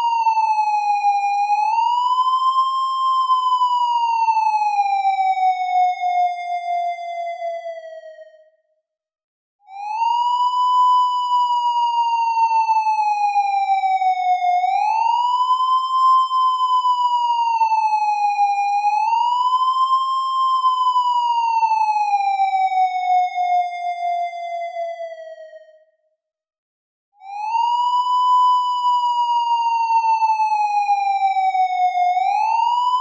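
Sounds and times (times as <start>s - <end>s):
police siren wailing: 27.2s - 33.0s.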